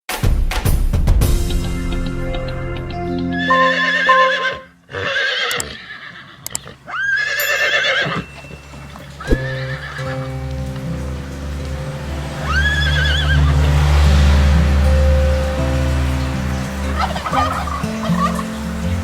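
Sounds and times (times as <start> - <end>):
background music sustained notes: 1.3 - 4.9, 7.4 - 19.0
horse whinnying: 3.3 - 8.5, 9.2 - 10.3.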